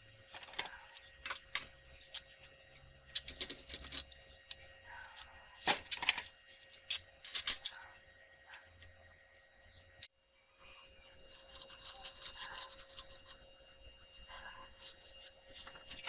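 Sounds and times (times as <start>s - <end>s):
metal tools clinking: 0.3s - 4.6s, 5.2s - 7.9s, 11.3s - 13.4s, 14.7s - 16.0s.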